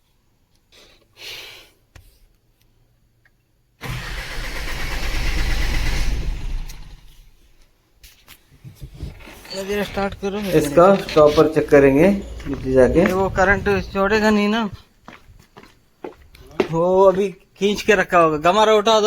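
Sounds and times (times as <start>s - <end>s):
diesel engine cranking by starter: 3.8s - 7.4s.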